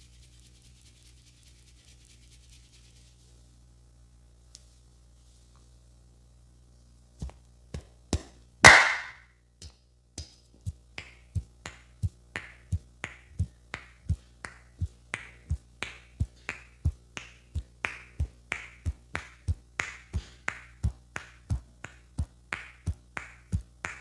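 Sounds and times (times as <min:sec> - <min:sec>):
hands slapping and tapping a head: 0:07.8 - 0:10.4, 0:11.0 - 0:24.0.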